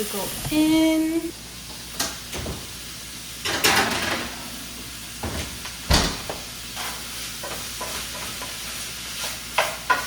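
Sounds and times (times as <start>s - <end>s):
sausage sizzling: 0.0s - 10.0s
oven door thumping shut: 5.2s - 6.4s.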